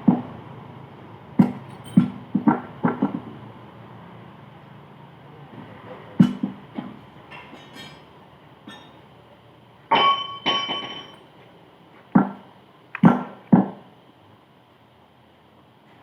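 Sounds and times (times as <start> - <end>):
ringing metal strikes: 1.4 - 2.3, 8.7 - 9.0, 9.9 - 11.2
metal knocks and clanks: 1.4 - 3.2, 6.2 - 8.1, 8.7 - 9.0, 9.9 - 11.2.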